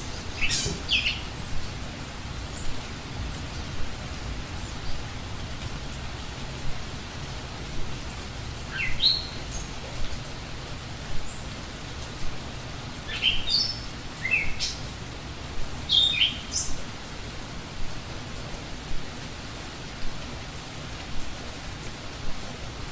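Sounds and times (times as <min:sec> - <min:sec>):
songbird chirping: 0:00.0 - 0:17.2
steady rain: 0:00.0 - 0:22.9.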